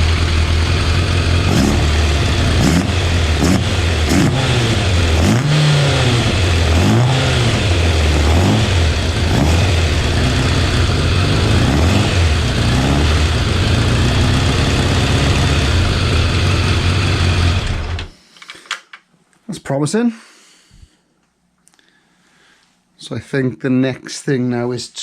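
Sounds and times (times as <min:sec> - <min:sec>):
motorcycle engine revving: 0:00.0 - 0:18.1.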